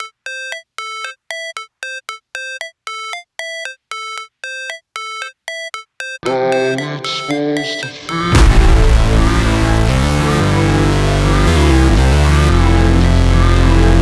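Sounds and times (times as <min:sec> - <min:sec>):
beeping synth melody: 0:00.0 - 0:14.0
electronic music with bass: 0:06.2 - 0:14.0.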